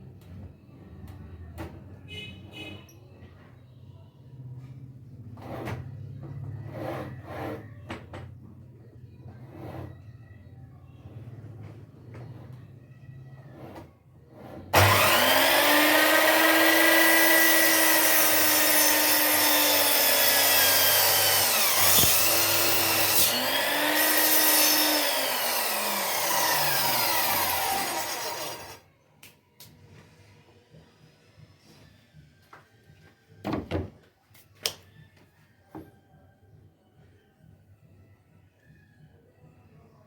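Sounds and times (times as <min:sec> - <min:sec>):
electric power tool running: 0:14.8 - 0:28.8.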